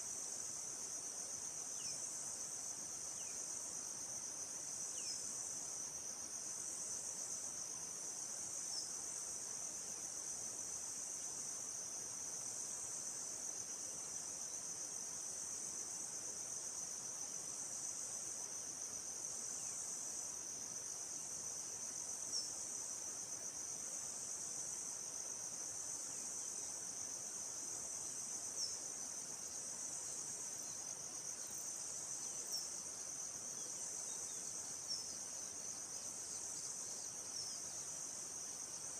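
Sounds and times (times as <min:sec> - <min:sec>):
faint forest hiss: 0:00.0 - 0:38.9
insects trilling: 0:01.6 - 0:05.6, 0:11.9 - 0:38.9.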